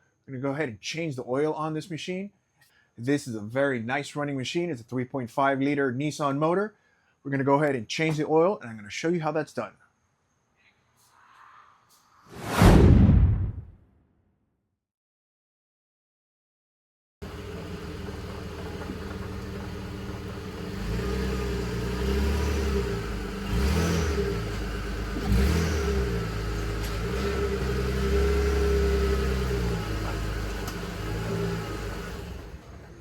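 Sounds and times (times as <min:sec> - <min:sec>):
car engine revving: 0:17.2 - 0:33.0.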